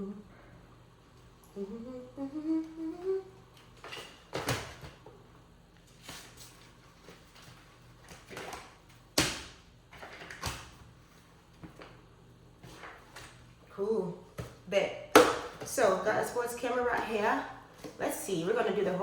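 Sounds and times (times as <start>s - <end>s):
person humming rising note: 0.0s - 0.4s, 1.4s - 3.4s.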